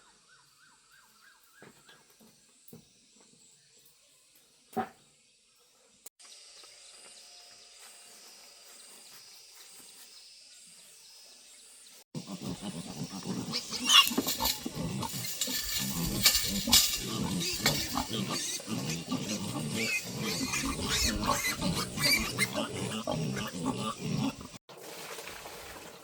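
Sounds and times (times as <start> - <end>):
farm animals calling: 12.2 - 24.6.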